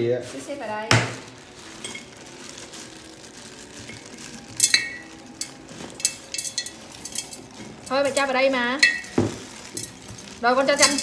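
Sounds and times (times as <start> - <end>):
wet handling noise: 0.2 - 11.0
glass jar clinks: 4.6 - 11.0.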